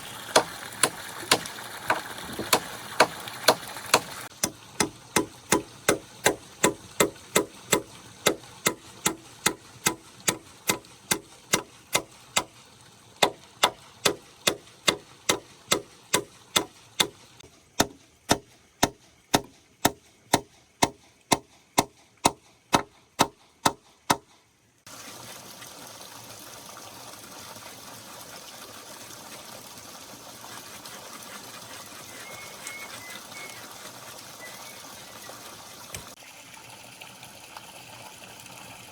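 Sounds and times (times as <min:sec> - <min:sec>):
flowing water rushing: 0:00.0 - 0:20.4, 0:24.9 - 0:38.9
hand tool striking wood: 0:00.3 - 0:12.6, 0:13.2 - 0:17.2, 0:17.8 - 0:24.4.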